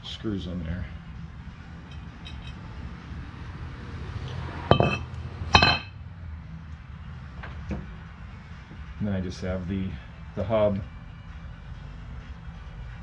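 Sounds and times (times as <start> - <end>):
metallic clinks: 1.9 - 2.6, 4.7 - 5.9.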